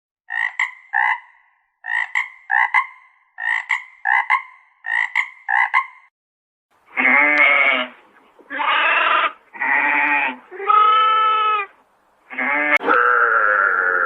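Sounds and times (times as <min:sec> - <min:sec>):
frog croaking: 0:00.3 - 0:06.0
long bleating call: 0:06.9 - 0:07.9, 0:08.5 - 0:11.7, 0:12.3 - 0:14.0.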